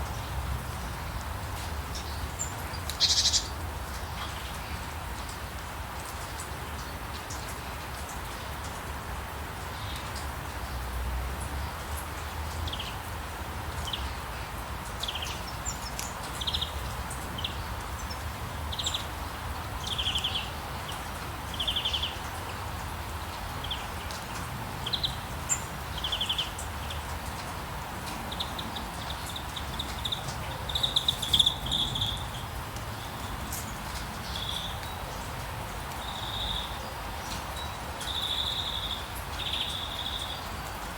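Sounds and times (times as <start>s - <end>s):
birds chirping: 24.8s - 33.6s.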